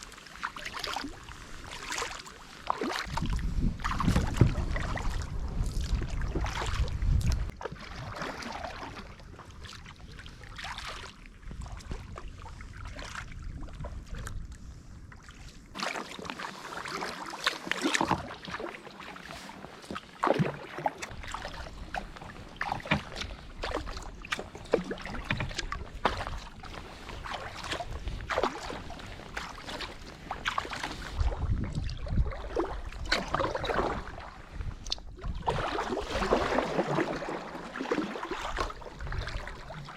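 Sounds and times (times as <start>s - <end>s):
paddle splashes and drips: 0.0s - 39.9s
wind buffeting microphone: 3.0s - 7.6s, 31.1s - 36.5s, 38.4s - 39.9s.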